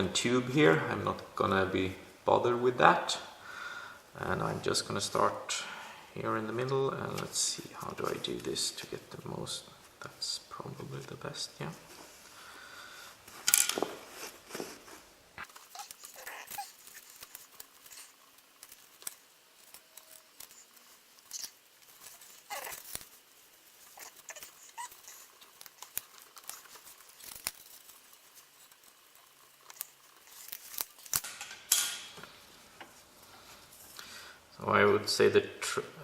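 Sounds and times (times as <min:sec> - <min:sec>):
heat wrap rustling and scraping: 0:06.3 - 0:34.3.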